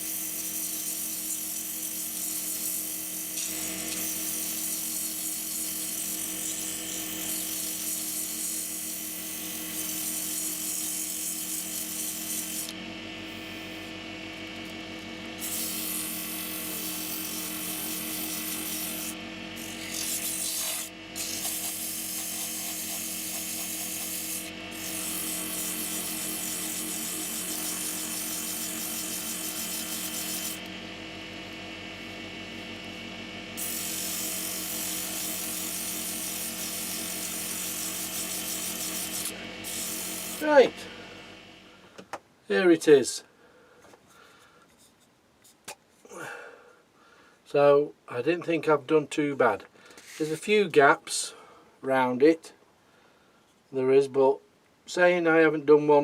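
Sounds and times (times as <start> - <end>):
sandpaper rasping on wood: 0.0 - 12.7, 15.4 - 30.6, 33.6 - 40.6
wood lathe motor hum: 0.0 - 42.0.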